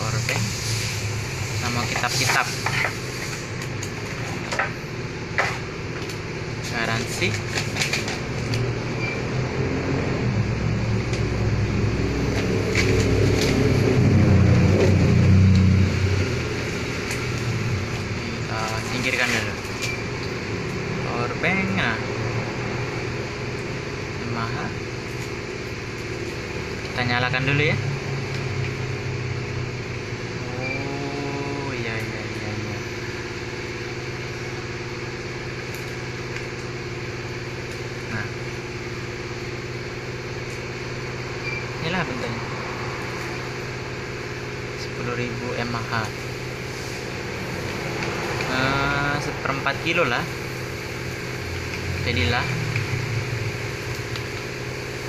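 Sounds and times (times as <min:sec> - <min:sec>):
vehicle engine humming: 0:00.0 - 0:55.0.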